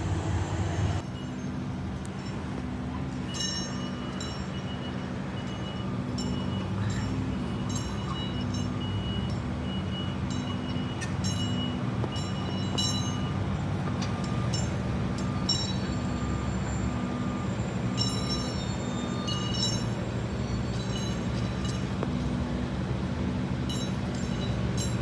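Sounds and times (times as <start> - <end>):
high-pitched whistling tones: 15.2 - 22.0.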